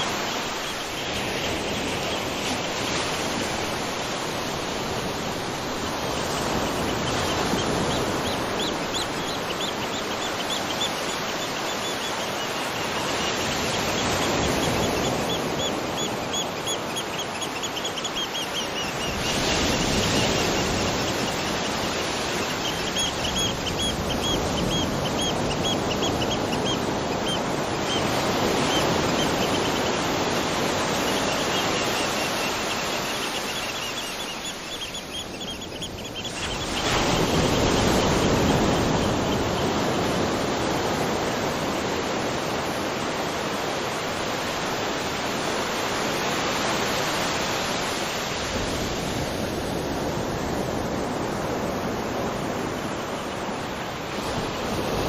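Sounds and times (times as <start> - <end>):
bird chirping trills: 6.2 - 39.6.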